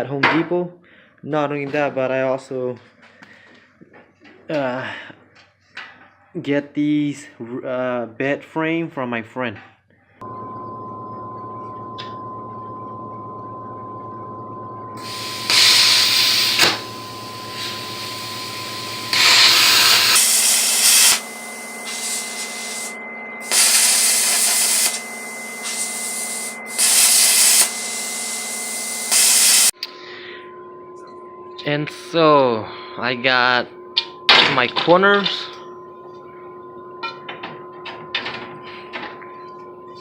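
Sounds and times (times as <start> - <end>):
hissing of blade cutting steel: 15.0 - 29.7
power cutter motor whining: 15.0 - 29.7.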